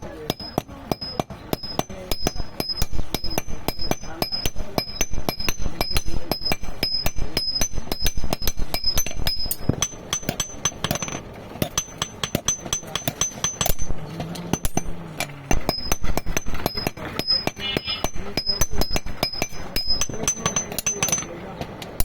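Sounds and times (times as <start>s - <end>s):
hammers striking iron on anvil: 0.0s - 22.0s.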